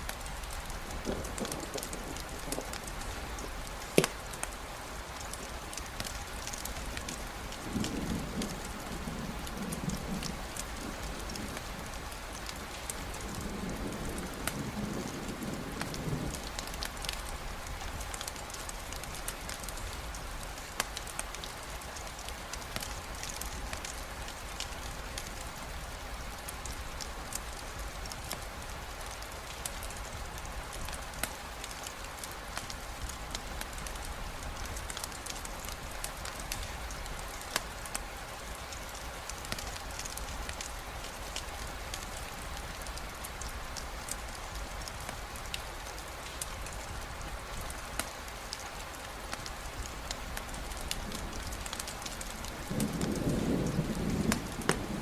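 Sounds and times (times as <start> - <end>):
steady rain falling: 0.0 - 55.0
thunder rumbling: 0.4 - 4.5, 7.1 - 18.1, 50.4 - 55.0.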